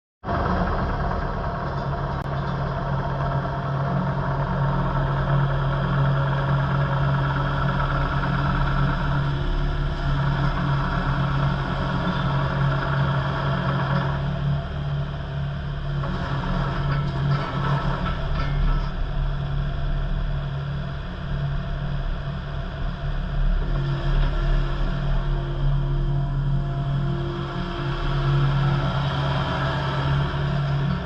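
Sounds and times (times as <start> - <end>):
excavator diesel engine humming: 0.3 - 31.0.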